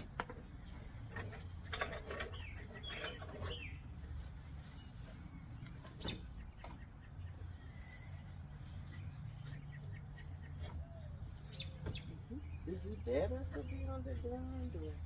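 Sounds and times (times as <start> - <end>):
doves fluttering: 0.0 - 15.0.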